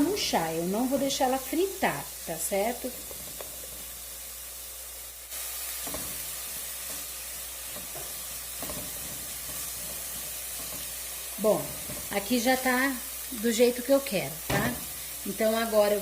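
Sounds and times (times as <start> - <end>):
onion and garlic sizzling in pan: 0.0 - 16.0.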